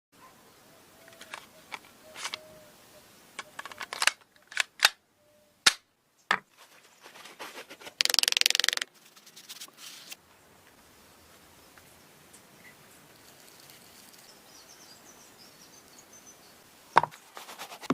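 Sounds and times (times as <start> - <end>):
mechanical clicks of small parts: 3.4 - 5.0.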